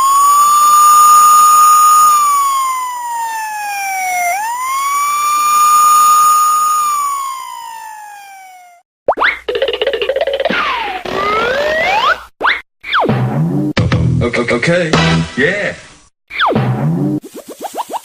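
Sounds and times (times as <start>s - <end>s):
siren wailing: 0.0s - 8.8s, 11.0s - 12.2s.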